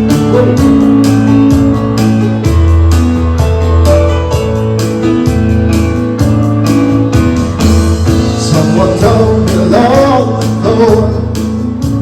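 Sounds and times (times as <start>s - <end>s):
rock band playing: 0.0s - 12.0s
person singing: 0.2s - 0.9s, 8.2s - 11.4s.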